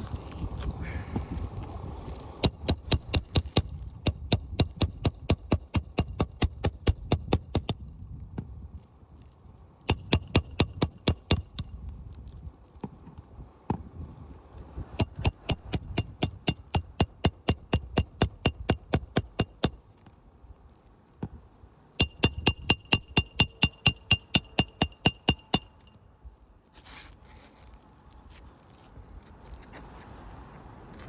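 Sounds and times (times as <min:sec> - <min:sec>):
hammer striking metal: 0:09.9 - 0:11.5, 0:15.0 - 0:19.8, 0:22.0 - 0:26.0.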